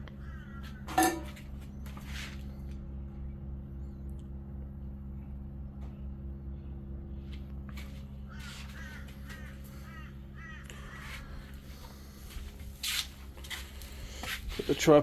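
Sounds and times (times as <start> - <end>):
crow cawing: 0.0 - 1.1, 8.3 - 12.1
steady low hum: 0.0 - 15.0.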